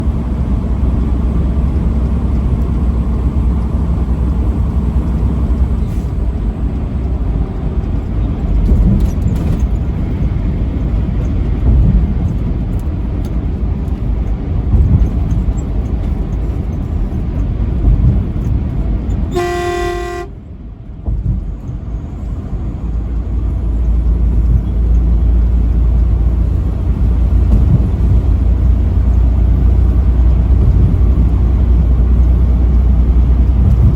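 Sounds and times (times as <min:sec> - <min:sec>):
vehicle road rumble: 0:00.0 - 0:33.9
truck horn blast: 0:19.3 - 0:20.4.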